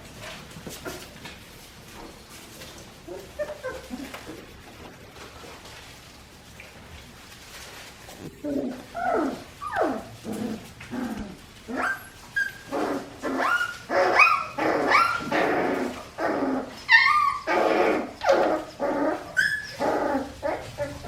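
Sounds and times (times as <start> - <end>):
puppies barking and yipping: 2.6 - 4.5, 8.4 - 21.0.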